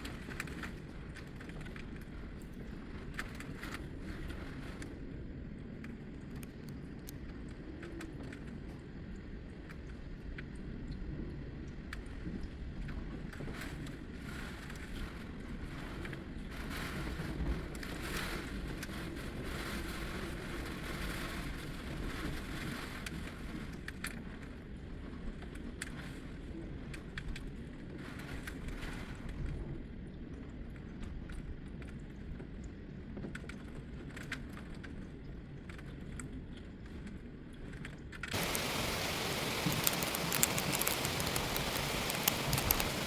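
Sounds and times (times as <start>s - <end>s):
heavy rain hissing: 38.3s - 43.0s
storm wind on microphone: 38.3s - 43.0s.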